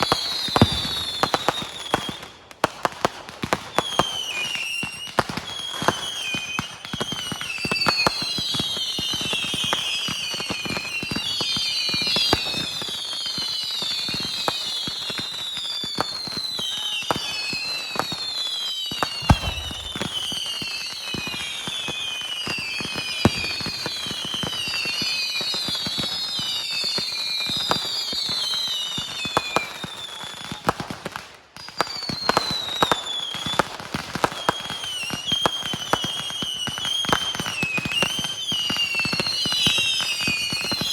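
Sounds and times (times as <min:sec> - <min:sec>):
fireworks crackling and popping: 0:00.0 - 0:40.9
fireworks falling whistles: 0:00.0 - 0:40.9
deep firework boom: 0:19.2 - 0:20.4.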